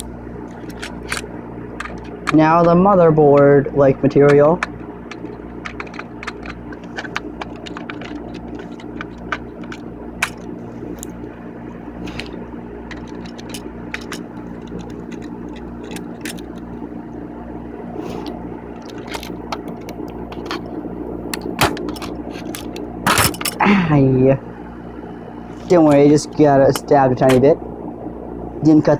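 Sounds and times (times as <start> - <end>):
tools clicking and scraping: 0.0 - 16.8, 18.0 - 23.6
steady hum: 0.0 - 28.9.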